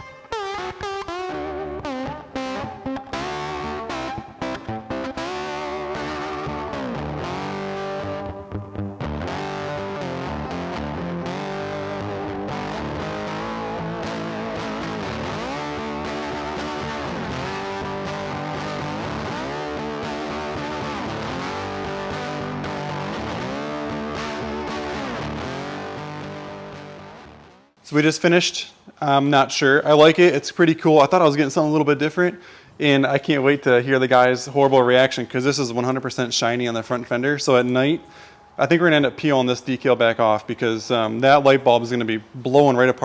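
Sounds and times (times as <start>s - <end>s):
distorted electric guitar rock music: 0.0s - 27.7s.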